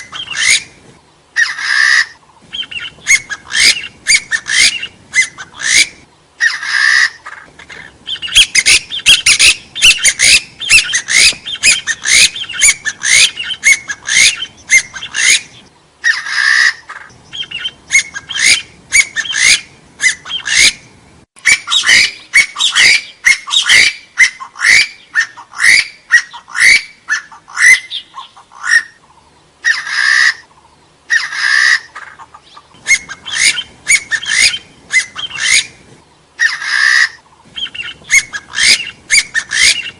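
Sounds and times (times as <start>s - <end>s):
partridge whistled calls: 0.0s - 0.8s, 1.4s - 39.9s.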